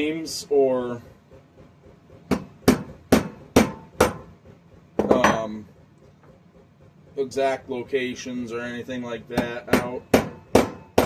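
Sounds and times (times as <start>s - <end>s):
hammer tapping metal: 2.3s - 5.6s, 9.2s - 11.0s.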